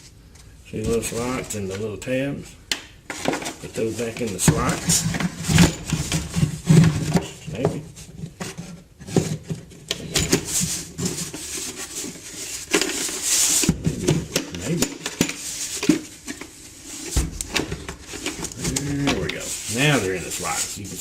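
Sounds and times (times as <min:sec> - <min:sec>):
plastic scraping and rubbing: 0:03.1 - 0:21.0.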